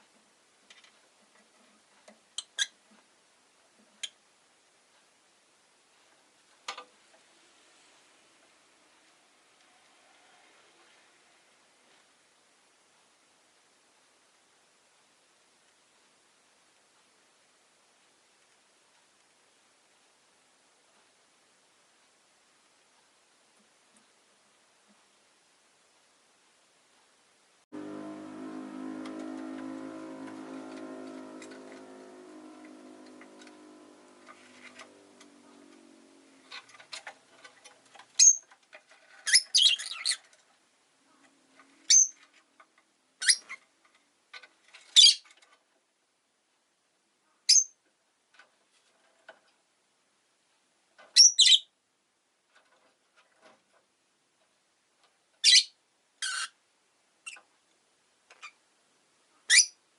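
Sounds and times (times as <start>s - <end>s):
low droning hum: 27.7s - 37.0s
bird chirping: 38.2s - 38.5s, 39.2s - 40.3s, 41.9s - 42.2s, 51.2s - 51.7s.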